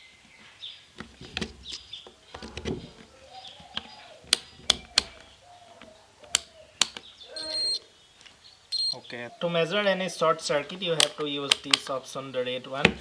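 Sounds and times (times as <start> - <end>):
small birds chirping: 0.0 - 9.7
sharp clicks: 4.3 - 5.3, 6.2 - 7.8, 11.0 - 12.0
multimeter handling knocks and rustles: 4.3 - 7.6, 11.0 - 11.9.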